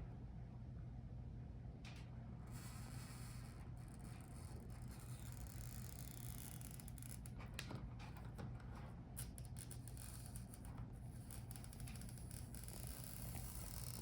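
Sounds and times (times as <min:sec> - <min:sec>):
small clicks from hands working: 0:01.8 - 0:02.1, 0:04.9 - 0:14.0.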